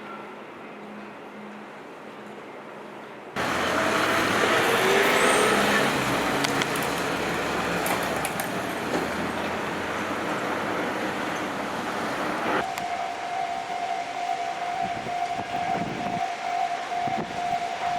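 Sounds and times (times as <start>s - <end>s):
traffic rushing: 3.4s - 17.9s.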